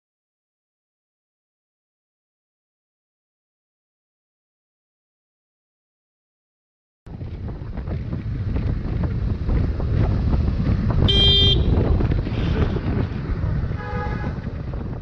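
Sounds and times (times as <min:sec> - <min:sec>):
road and wind noise: 0:07.1 - 0:15.0
car horn toot: 0:11.0 - 0:11.8, 0:13.8 - 0:14.4.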